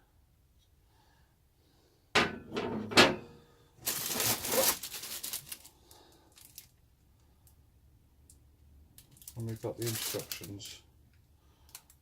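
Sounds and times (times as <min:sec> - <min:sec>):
packaging crinkling and rustling: 0:03.8 - 0:06.8, 0:09.0 - 0:10.8.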